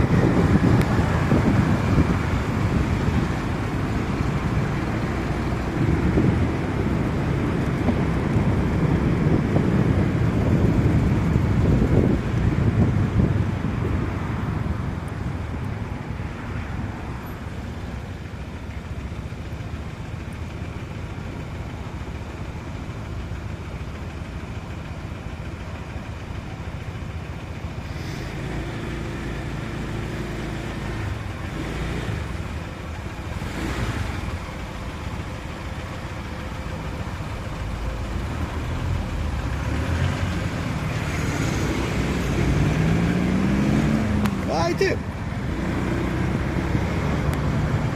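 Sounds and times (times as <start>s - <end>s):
vehicle engine running: 0.0s - 47.9s.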